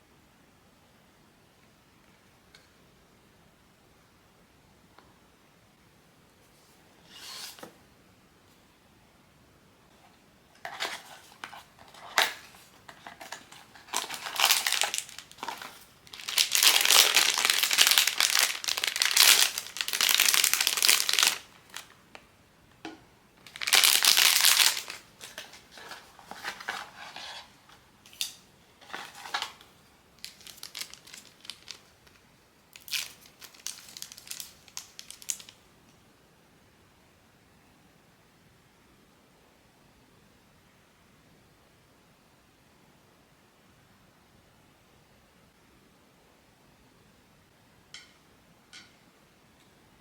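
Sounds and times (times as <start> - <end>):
plastic wrapping crinkling: 10.6 - 22.0, 23.4 - 35.6.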